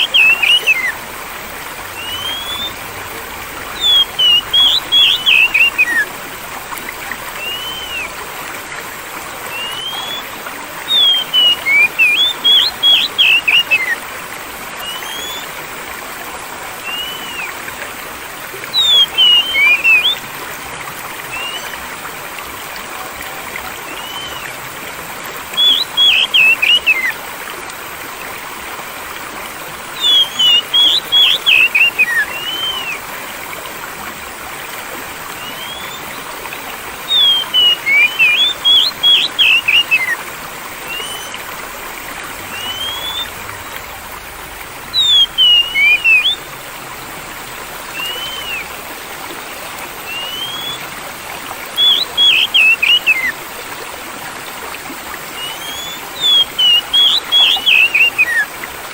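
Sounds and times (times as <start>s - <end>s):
bird whistling song: 0.0s - 0.9s, 1.9s - 2.8s, 3.8s - 6.1s, 7.4s - 8.1s, 9.5s - 14.0s, 14.8s - 15.5s, 16.8s - 17.6s, 18.6s - 20.3s, 21.3s - 21.8s, 23.9s - 24.6s, 25.5s - 27.2s, 30.0s - 33.0s, 35.4s - 36.2s, 37.1s - 40.2s, 40.9s - 41.4s, 42.5s - 43.5s, 44.9s - 46.5s, 47.9s - 48.7s, 50.0s - 50.9s, 51.7s - 53.4s, 55.4s - 58.5s
flowing water: 0.0s - 58.9s.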